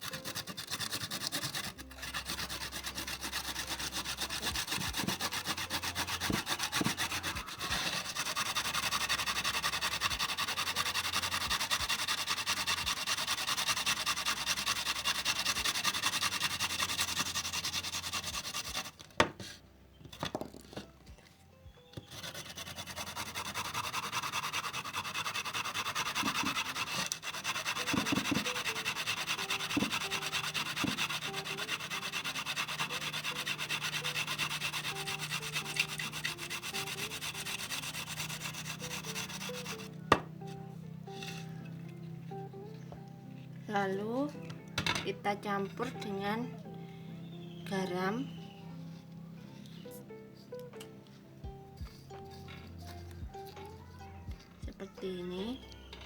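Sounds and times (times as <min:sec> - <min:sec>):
grating on a hand grater: 0:00.0 - 0:19.0, 0:22.1 - 0:40.0.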